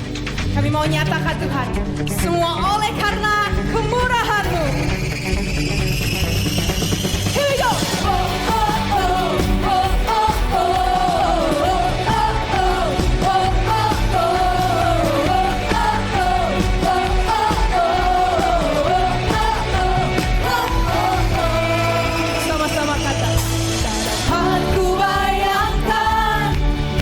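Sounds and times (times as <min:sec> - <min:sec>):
bass: 0:00.0 - 0:27.0
drums: 0:00.0 - 0:27.0
bending lead melody: 0:08.0 - 0:27.0.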